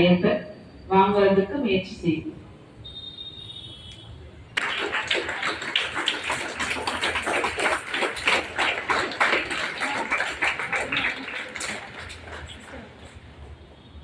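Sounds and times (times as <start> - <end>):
children applauding: 4.6 - 13.4.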